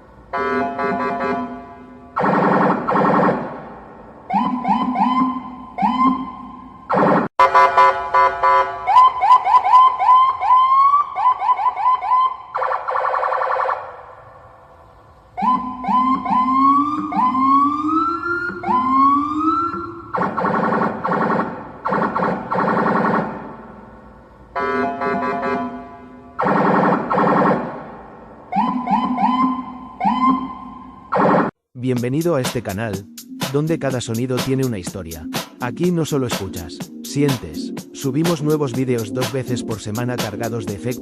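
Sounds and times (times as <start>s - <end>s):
harsh buzzing horn: 0.3s - 2.2s, 24.6s - 26.4s
police siren whooping: 4.2s - 7.8s, 8.8s - 14.2s, 15.4s - 23.6s, 24.6s - 31.5s.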